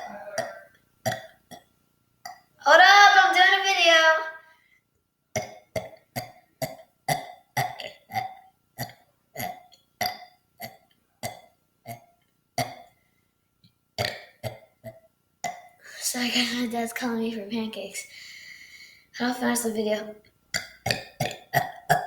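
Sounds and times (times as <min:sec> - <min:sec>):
person burping: 0:00.0 - 0:01.7, 0:05.4 - 0:12.9, 0:14.0 - 0:15.8, 0:20.6 - 0:22.0.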